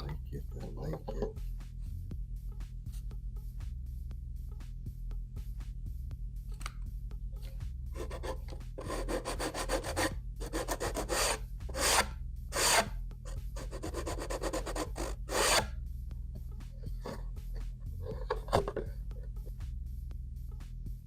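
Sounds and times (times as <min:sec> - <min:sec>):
low hum: 0:00.0 - 0:21.0
scraping across wood: 0:08.0 - 0:13.0, 0:13.6 - 0:15.8.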